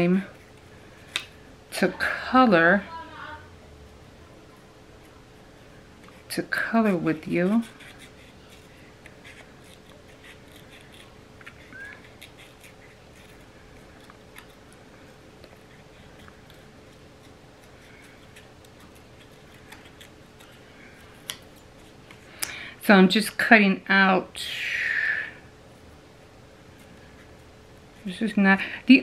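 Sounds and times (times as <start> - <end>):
faint steady hum: 0.0 - 29.0
scissors snipping paper: 6.6 - 14.8, 15.4 - 22.1.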